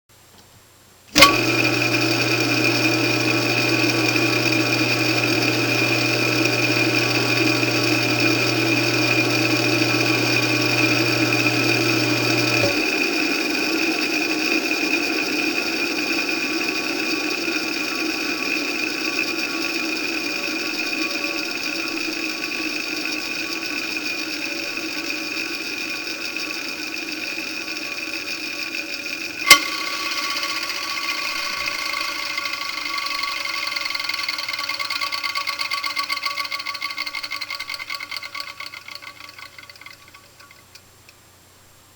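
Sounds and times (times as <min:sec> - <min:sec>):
low electrical hum: 0:00.1 - 0:25.5, 0:39.6 - 0:41.9
electric motor whining: 0:01.2 - 0:40.5.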